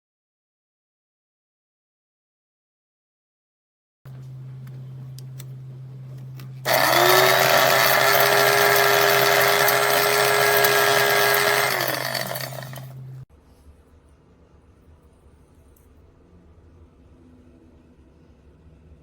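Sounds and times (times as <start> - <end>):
coffee grinder motor whining: 6.6 - 13.2.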